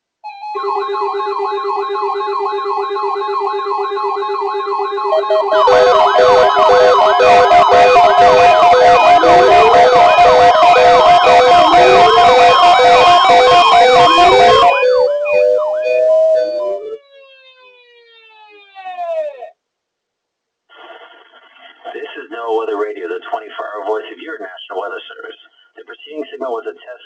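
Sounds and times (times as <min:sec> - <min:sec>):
pulsing sweeping alarm tones: 0:00.3 - 0:19.5
weather radio siren warble: 0:00.4 - 0:19.6.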